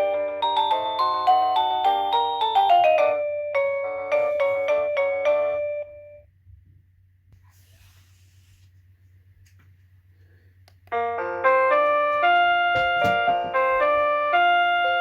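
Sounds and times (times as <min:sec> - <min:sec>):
electronic doorbell chime tune: 0:00.0 - 0:06.3, 0:11.0 - 0:15.0.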